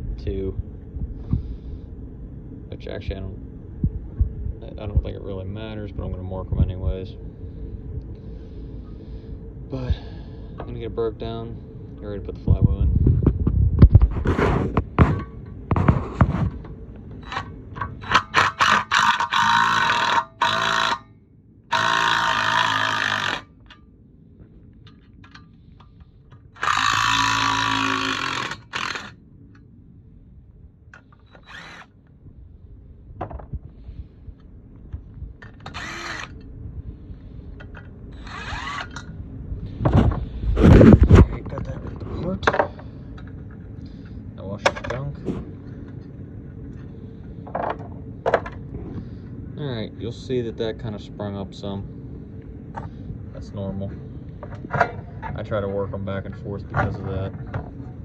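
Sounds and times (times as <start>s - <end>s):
impact wrench bursts: 17.2s - 21.1s, 21.7s - 23.5s, 26.5s - 29.2s, 31.0s - 31.9s, 35.4s - 36.4s, 38.2s - 39.0s.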